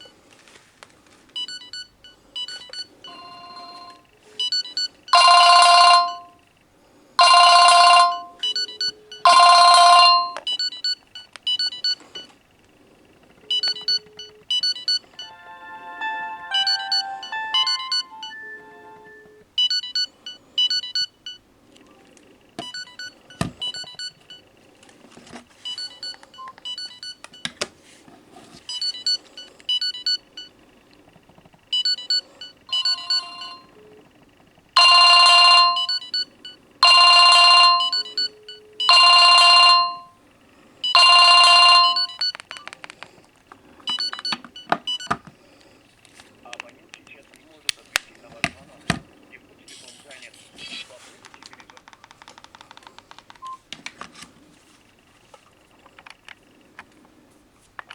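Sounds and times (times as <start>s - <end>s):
electronic beep melodies: 13.5s - 19.4s, 31.8s - 33.8s, 35.7s - 36.3s.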